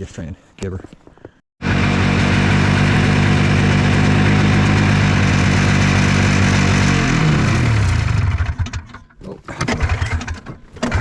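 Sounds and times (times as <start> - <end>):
snowmobile engine running and stalling: 1.6 - 9.0, 9.6 - 11.0.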